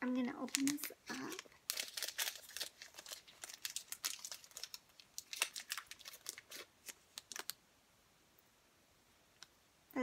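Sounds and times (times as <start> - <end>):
packaging crinkling: 0.2 - 7.6.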